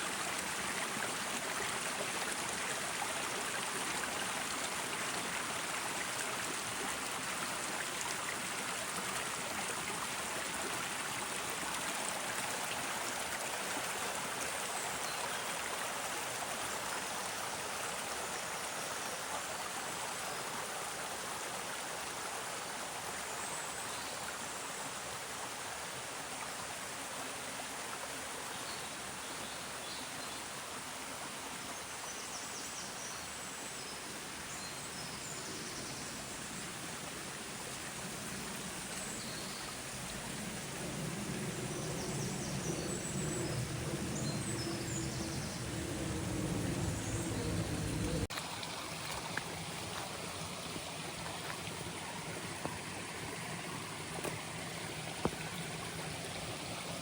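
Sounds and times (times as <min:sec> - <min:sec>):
stream of running water: 0:00.0 - 0:57.0.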